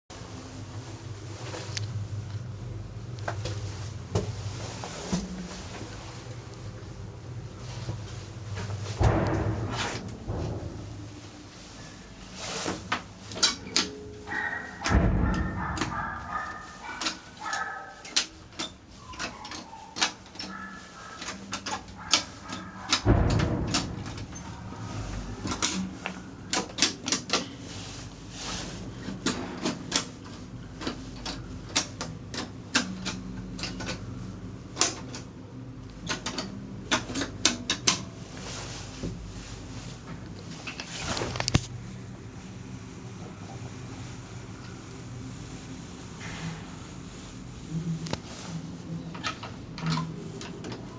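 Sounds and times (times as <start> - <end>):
dull thumps: 8.9 - 11.5.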